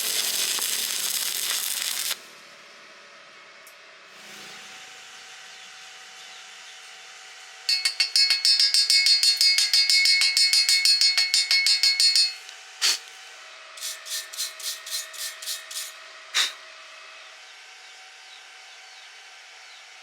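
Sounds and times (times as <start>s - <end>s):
hammer striking steel: 7.7s - 13.0s, 13.8s - 16.6s.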